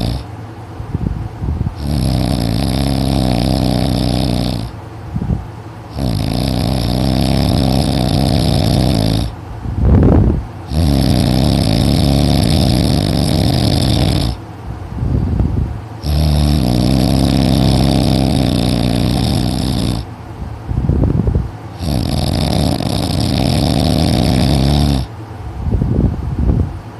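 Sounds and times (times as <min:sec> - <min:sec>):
heavy snoring: 0:00.0 - 0:00.3, 0:01.6 - 0:04.8, 0:05.9 - 0:09.4, 0:10.0 - 0:14.4, 0:15.1 - 0:20.1, 0:21.7 - 0:25.2.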